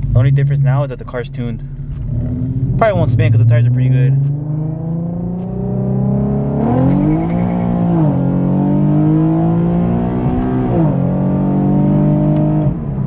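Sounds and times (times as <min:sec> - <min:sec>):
car engine at full throttle: 0:00.0 - 0:13.0
tires spinning: 0:04.2 - 0:10.8.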